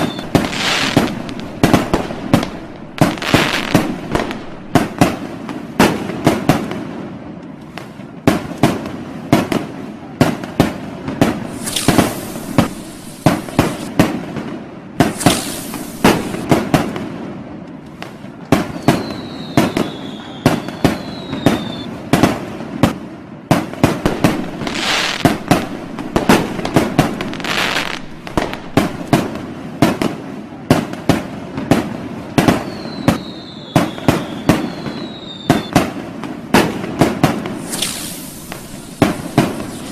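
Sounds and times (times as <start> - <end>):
falling whistle: 0.0 - 1.1, 18.8 - 21.9, 32.6 - 35.8
fireworks hissing bursts: 0.0 - 6.6, 11.2 - 17.0, 18.6 - 21.9, 23.8 - 30.2, 32.4 - 39.9
fireworks bangs and cracks: 0.0 - 39.9.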